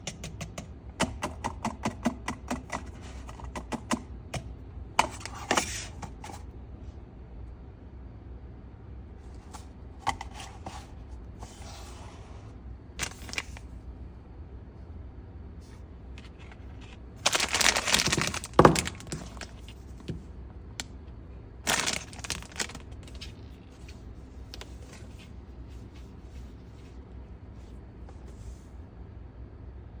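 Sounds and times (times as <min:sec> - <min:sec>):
steady low hum: 0:00.0 - 0:30.0
cardboard and plastic crinkling: 0:13.0 - 0:13.7, 0:16.2 - 0:20.2, 0:21.6 - 0:25.4.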